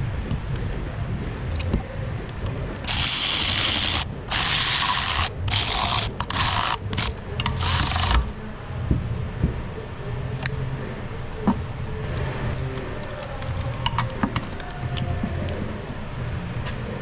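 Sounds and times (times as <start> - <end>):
ratchet wrench tightening bolts: 2.8 - 8.3.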